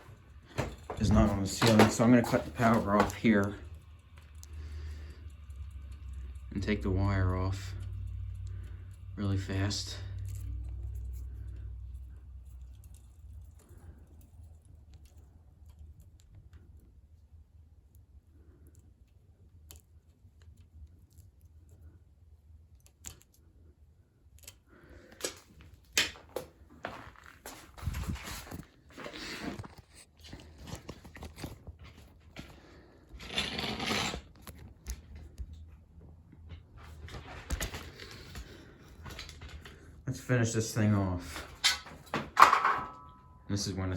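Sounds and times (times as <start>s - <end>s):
ceiling fan motor winding down: 0.0s - 14.4s
clicks and knocks of fan parts: 0.0s - 16.8s, 24.4s - 32.8s, 34.3s - 40.0s, 41.2s - 43.4s
scraping rustle: 26.9s - 35.4s.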